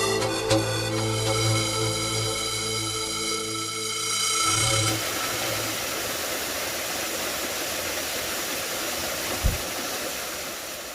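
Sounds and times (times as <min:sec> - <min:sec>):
background music: 0:00.0 - 0:05.0
low thump: 0:09.4 - 0:09.7.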